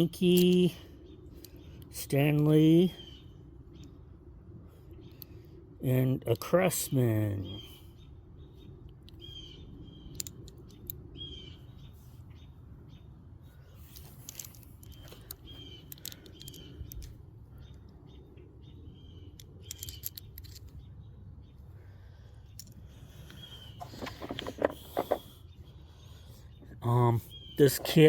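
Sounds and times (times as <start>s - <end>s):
small birds chirping: 0.0s - 28.0s
tools clicking: 10.1s - 11.1s, 13.9s - 17.2s, 19.3s - 20.8s, 23.8s - 25.3s.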